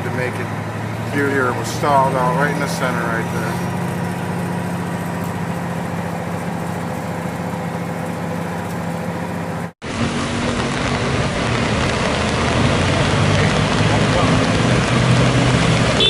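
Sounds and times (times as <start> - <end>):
vehicle engine hum: 0.0 - 16.0
rain hiss: 0.7 - 16.0.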